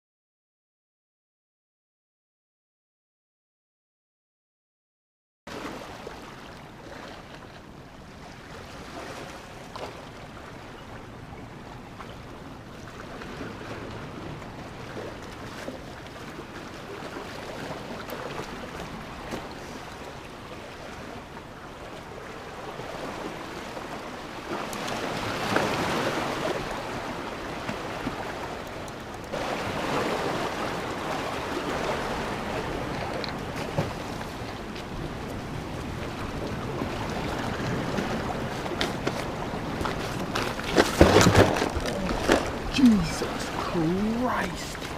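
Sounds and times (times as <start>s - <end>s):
waves breaking: 5.5s - 44.9s
ocean surf rushing: 22.4s - 44.9s.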